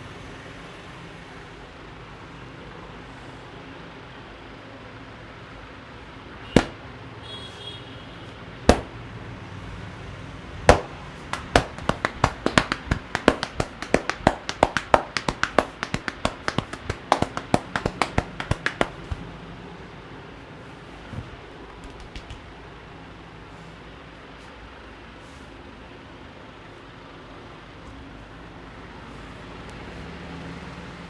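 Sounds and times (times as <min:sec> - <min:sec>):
hand slaps on body: 0:06.6 - 0:06.8, 0:08.7 - 0:09.0, 0:10.7 - 0:19.3, 0:21.7 - 0:22.5.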